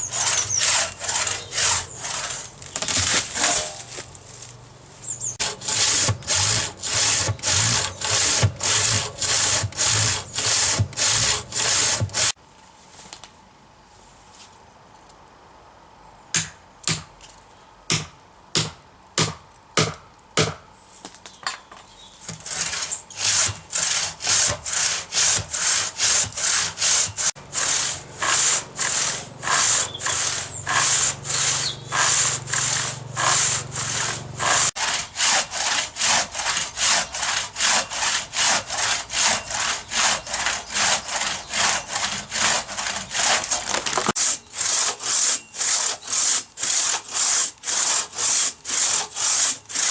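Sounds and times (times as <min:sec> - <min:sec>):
hand saw cutting wood: 0:00.0 - 0:04.0, 0:05.4 - 0:12.4, 0:22.3 - 0:49.9.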